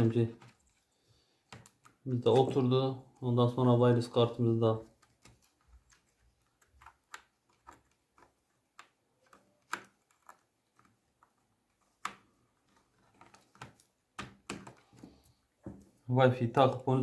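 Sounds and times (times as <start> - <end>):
small laptop parts clicking: 0.3 - 2.6, 4.8 - 16.0.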